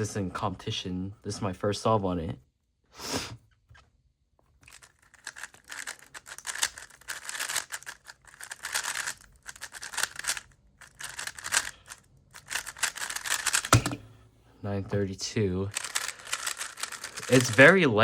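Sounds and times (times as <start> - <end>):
speedcube plastic clicking: 4.7 - 14.0, 15.7 - 17.6.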